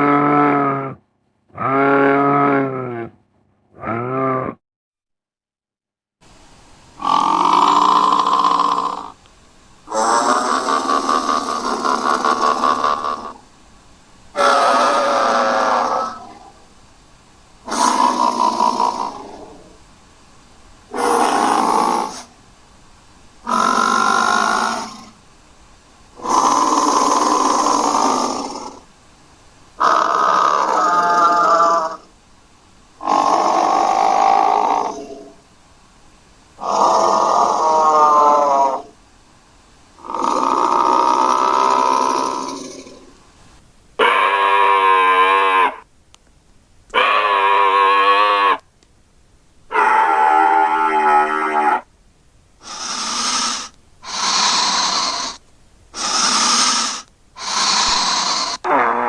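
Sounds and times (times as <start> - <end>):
long pitched creature calls: 0.0 - 3.2, 3.8 - 4.6, 7.0 - 9.2, 9.9 - 13.4, 14.4 - 16.6, 17.6 - 19.8, 20.9 - 22.3, 23.4 - 25.2, 26.2 - 28.9, 29.8 - 32.1, 33.0 - 35.4, 36.6 - 39.0, 40.0 - 43.2, 44.0 - 45.9, 46.9 - 48.6, 49.7 - 51.9, 52.6 - 59.0.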